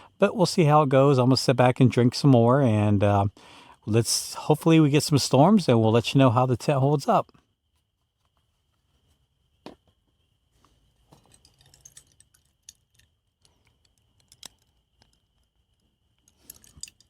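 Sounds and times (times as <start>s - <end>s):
faint clicks and ticks: 10.6s - 17.0s.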